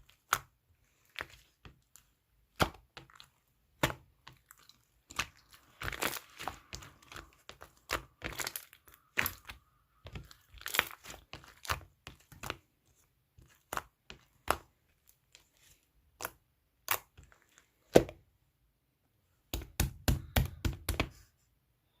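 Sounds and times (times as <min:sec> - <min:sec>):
slime popping and crackling: 0:02.5 - 0:12.6.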